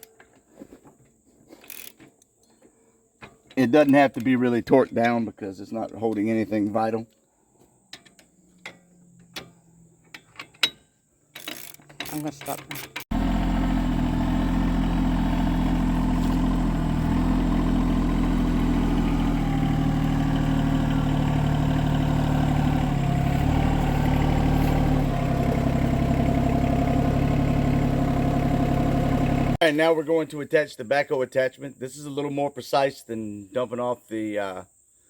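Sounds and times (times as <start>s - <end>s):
tractor diesel engine running: 13.1s - 29.6s.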